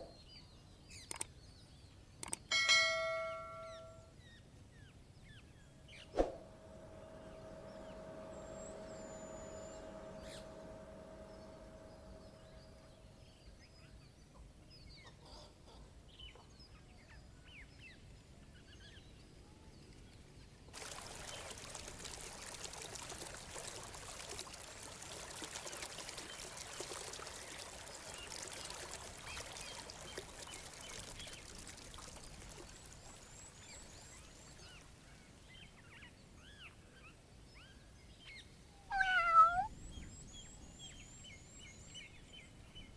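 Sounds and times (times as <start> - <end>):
ringing chime: 2.5 - 4.1
rushing water: 6.2 - 13.1, 20.7 - 35.0
faint bird chirps: 37.6 - 42.9.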